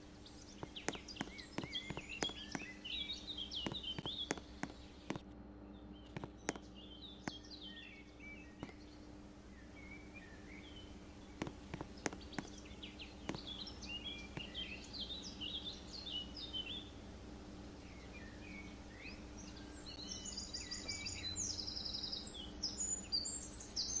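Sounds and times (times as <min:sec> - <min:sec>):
songbirds chirping: 0:00.0 - 0:17.0, 0:17.8 - 0:24.0
sharp clicks: 0:00.6 - 0:02.7, 0:03.7 - 0:05.2, 0:11.4 - 0:12.5.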